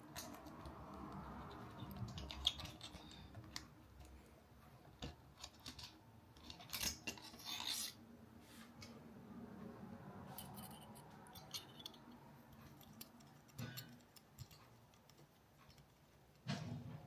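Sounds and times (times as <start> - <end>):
rustling scrape: 6.4 - 8.8
hard objects clicking: 10.4 - 16.5.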